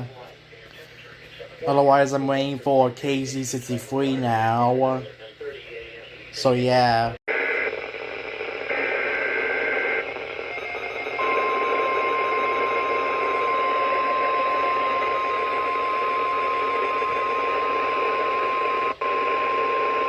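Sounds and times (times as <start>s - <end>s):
radio static: 0.0s - 20.0s
steady alarm tone: 7.7s - 20.0s
warbling data tones: 7.8s - 20.0s.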